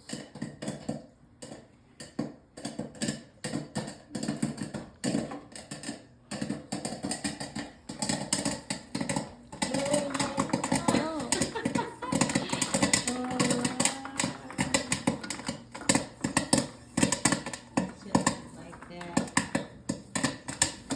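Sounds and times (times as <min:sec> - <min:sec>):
popcorn popping: 0:00.0 - 0:20.9.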